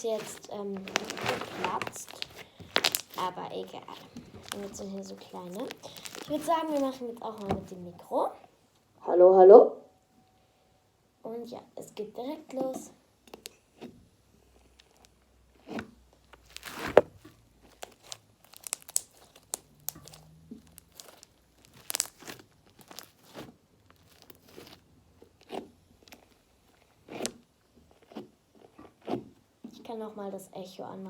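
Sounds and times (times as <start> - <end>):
slime crunching and popping: 0.0 - 7.9, 14.5 - 29.4.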